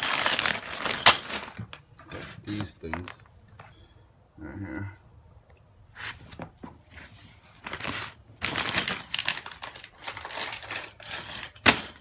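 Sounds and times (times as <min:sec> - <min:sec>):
plastic crinkling and rustling: 0:00.0 - 0:03.3, 0:06.3 - 0:12.0.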